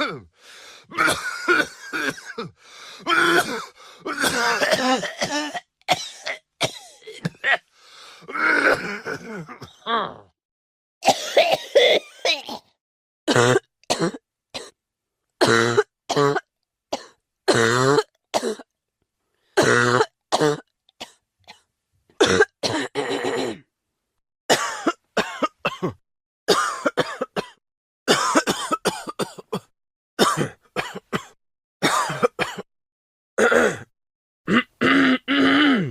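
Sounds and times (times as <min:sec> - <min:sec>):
person coughing: 0:00.0 - 0:00.3, 0:00.9 - 0:07.7, 0:08.3 - 0:09.9, 0:11.0 - 0:14.8, 0:15.4 - 0:18.7, 0:22.2 - 0:23.7, 0:24.5 - 0:32.7, 0:33.4 - 0:33.9, 0:34.5 - 0:35.9.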